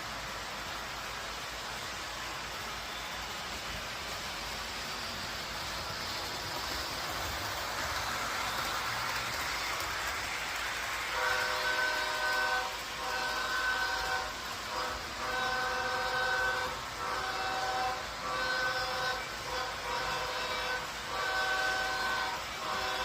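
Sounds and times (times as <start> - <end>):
train rushing: 0.0 - 23.0
train horn chord blasts: 11.1 - 23.0.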